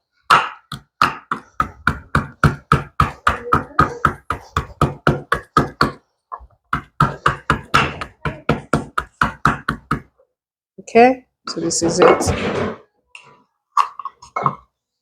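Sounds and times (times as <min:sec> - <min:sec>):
pestle pounding in a mortar: 0:00.3 - 0:06.0, 0:06.7 - 0:10.1.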